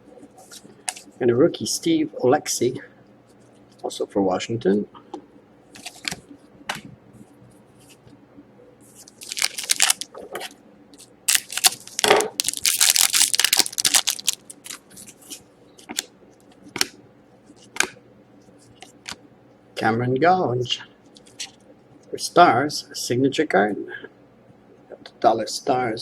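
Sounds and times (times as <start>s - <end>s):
wrapper crinkling and tearing: 9.1s - 10.2s, 11.3s - 15.1s.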